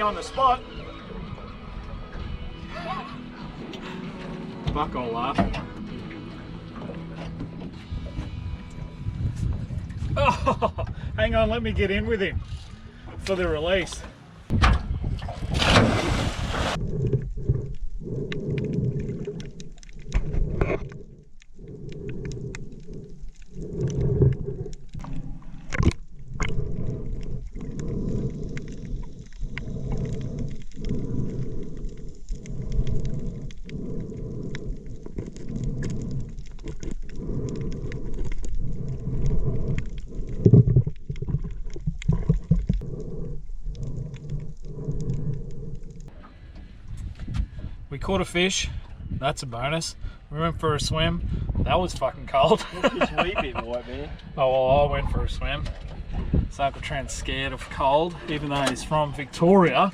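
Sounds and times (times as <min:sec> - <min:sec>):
muffled underwater water surges: 0:14.9 - 0:59.9
person splashing into water: 0:15.1 - 0:16.8.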